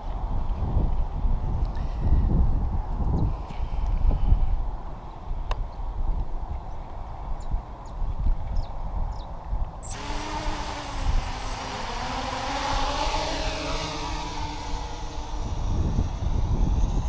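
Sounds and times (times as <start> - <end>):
wind rumbling on microphone: 0.0 - 17.0
quadcopter motors whining: 9.8 - 17.0.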